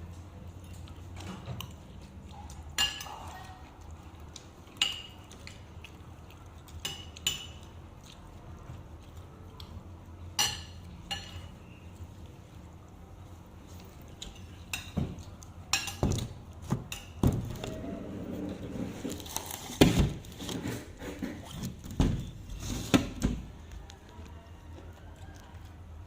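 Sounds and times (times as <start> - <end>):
dishes and utensils clinking: 2.7 - 3.5, 6.8 - 7.7, 10.4 - 11.6, 14.2 - 17.9.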